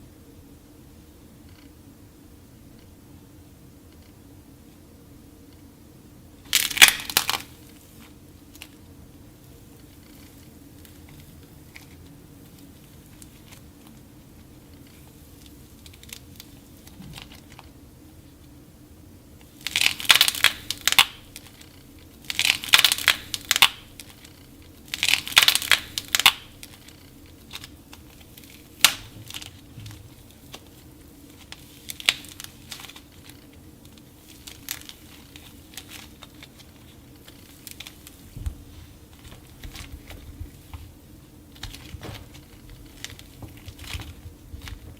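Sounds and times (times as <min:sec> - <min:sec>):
dry clay cracking and crumbling: 0:06.4 - 0:08.8, 0:19.4 - 0:44.9.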